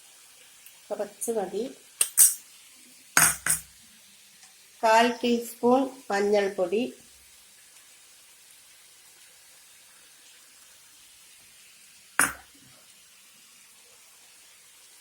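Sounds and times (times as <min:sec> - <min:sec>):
filling sizzling in a pan: 0:00.0 - 0:15.0
utensil knocking on a pan: 0:03.2 - 0:03.7, 0:12.2 - 0:12.5.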